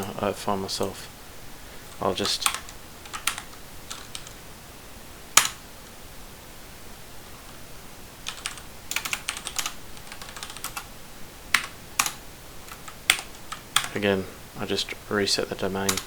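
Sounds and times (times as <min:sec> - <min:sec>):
keyboard keystrokes: 0:02.2 - 0:04.4, 0:05.4 - 0:05.6, 0:08.3 - 0:10.8, 0:11.5 - 0:13.9.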